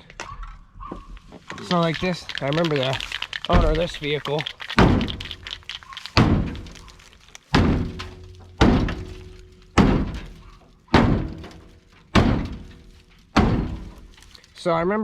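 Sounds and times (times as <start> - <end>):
heavy blows on sheet metal: 6.2 - 6.8, 7.5 - 14.2.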